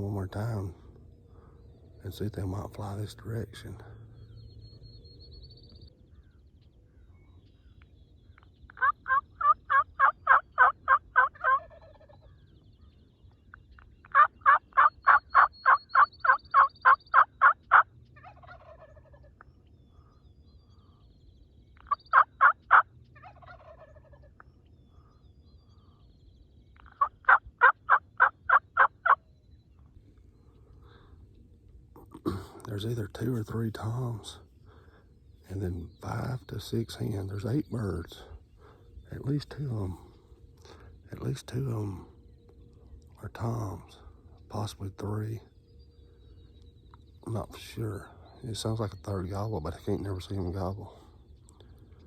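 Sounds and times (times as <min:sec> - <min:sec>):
turkey call yelps: 0:08.7 - 0:12.4, 0:14.0 - 0:19.2, 0:21.8 - 0:24.4, 0:26.8 - 0:29.3.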